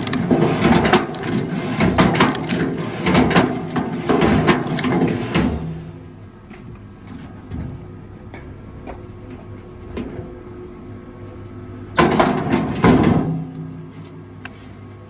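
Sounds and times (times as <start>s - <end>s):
log cracking and splintering: 0.0s - 2.7s
log splitter motor hum: 0.0s - 15.0s.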